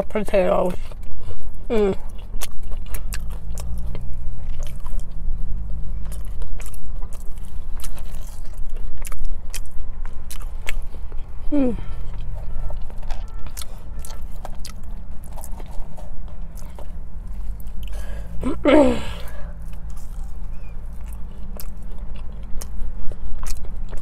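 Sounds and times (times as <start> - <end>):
chewing crunchy fries: 0.0 - 24.0.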